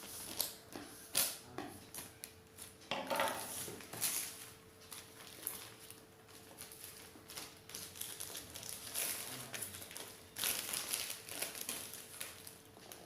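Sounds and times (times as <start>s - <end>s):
packaging rustling and scraping: 2.6s - 13.0s.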